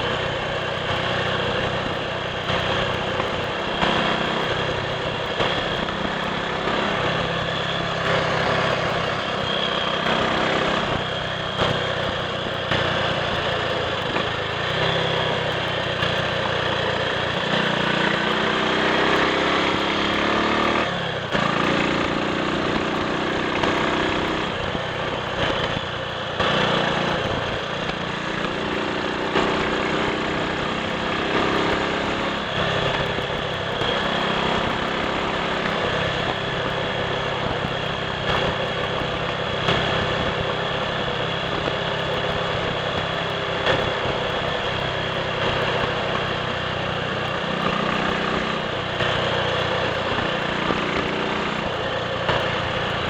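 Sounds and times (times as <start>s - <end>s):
motorcycle engine running: 0.0s - 53.0s
steady rush of noise: 0.0s - 53.0s.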